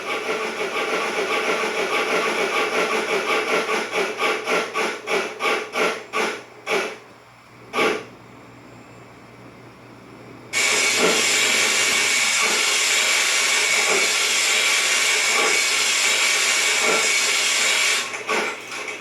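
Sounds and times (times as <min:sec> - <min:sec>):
steam hiss from a speaker: 0:10.6 - 0:18.0.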